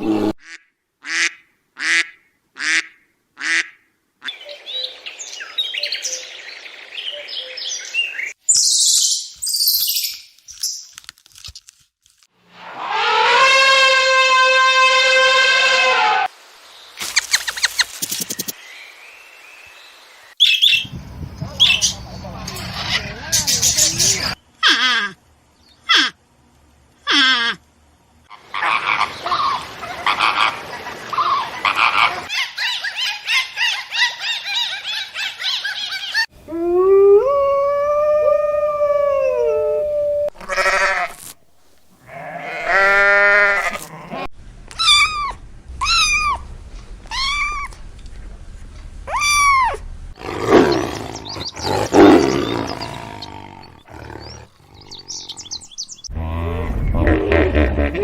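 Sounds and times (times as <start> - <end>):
rough noisy animal calls: 12.6 - 16.3, 40.4 - 46.4, 49.1 - 58.0
long pitched animal call: 12.8 - 16.3.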